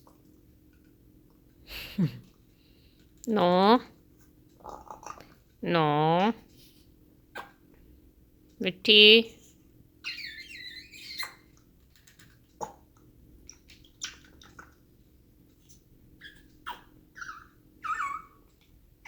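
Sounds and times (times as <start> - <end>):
parrot whistled calls: 10.0 - 11.4
parrot chirping: 10.0 - 11.5, 13.8 - 14.4, 16.2 - 18.4.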